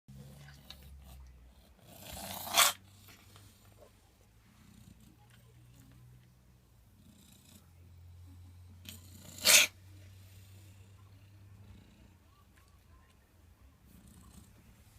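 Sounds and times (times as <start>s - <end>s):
low purr-like rumble: 3.1s - 14.9s.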